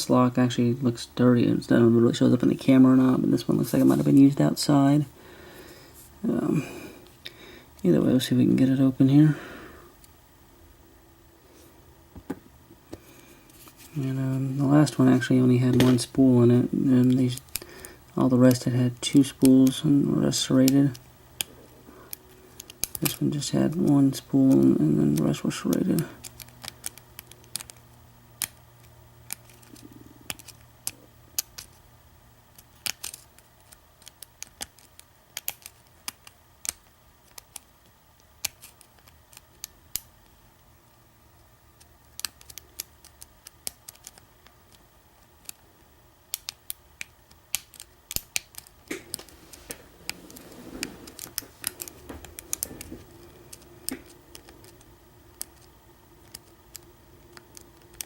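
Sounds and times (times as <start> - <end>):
handling and rubbing of lock: 47.3 - 58.0.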